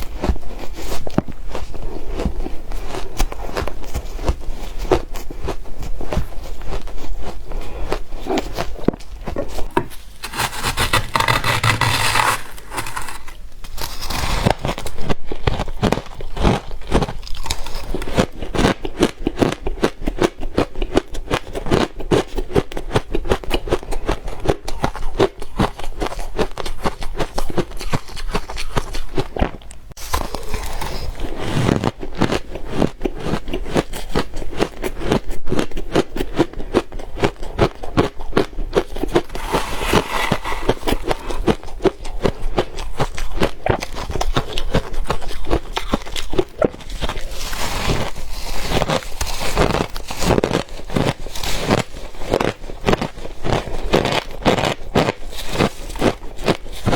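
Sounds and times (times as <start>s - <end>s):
chewing crushed ice: 0.0s - 56.9s
hissing scraping: 9.8s - 14.0s.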